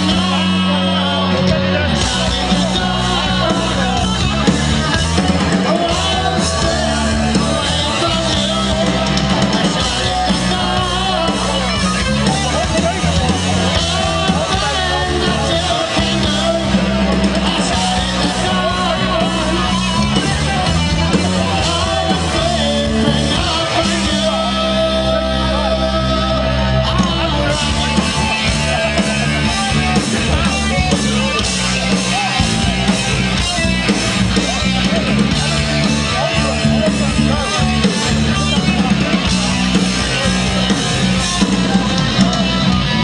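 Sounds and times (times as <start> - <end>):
loud rock band playing: 0.0 - 43.0
singer shouting: 0.0 - 43.0.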